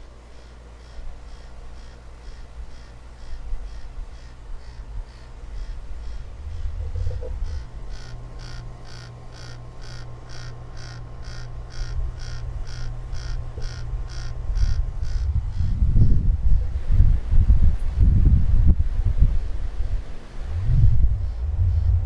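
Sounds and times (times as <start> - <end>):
air conditioner humming: 0.0 - 22.0
squawking chirp: 0.3 - 15.8
wind rumble on microphone: 2.3 - 9.0, 11.2 - 22.0.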